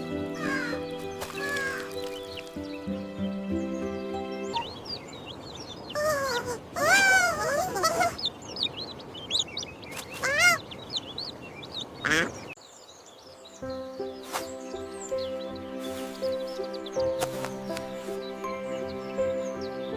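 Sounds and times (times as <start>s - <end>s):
background music: 0.0s - 5.0s, 13.3s - 19.9s
small birds chirping: 0.0s - 19.9s.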